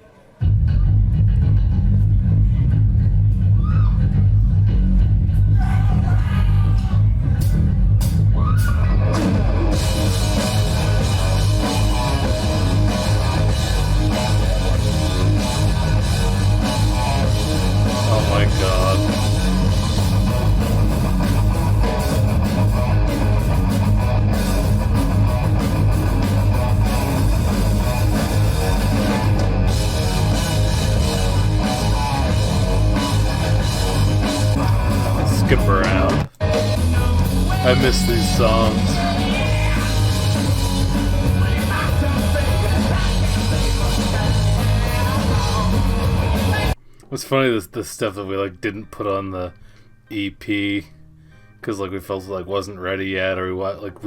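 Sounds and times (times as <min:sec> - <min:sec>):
drum kit: 0:00.4 - 0:46.8
electric guitar: 0:00.4 - 0:46.8.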